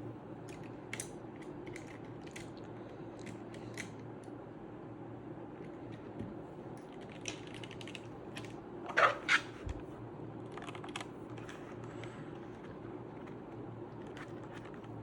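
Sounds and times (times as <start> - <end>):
mechanical keyboard keys clacking: 0.5 - 2.6, 6.8 - 8.5, 10.5 - 11.5.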